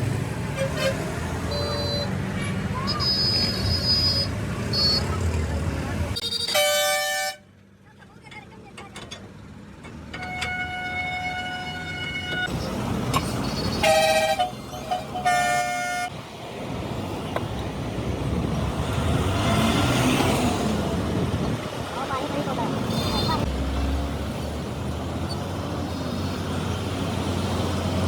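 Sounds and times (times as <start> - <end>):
passing road traffic: 0.0 - 28.0
vehicle horn honking: 0.5 - 2.1, 6.2 - 7.5, 10.2 - 12.5, 13.5 - 16.1, 22.9 - 23.4.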